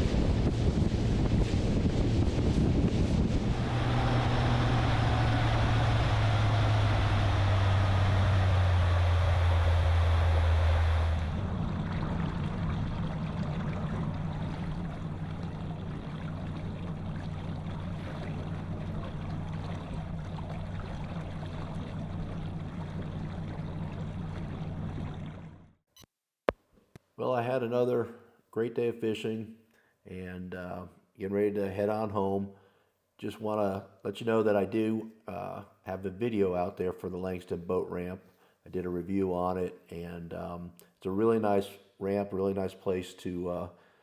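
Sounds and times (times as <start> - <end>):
wind: 0.0 - 25.7
outboard motor running: 0.0 - 25.8
water noise: 0.0 - 25.8.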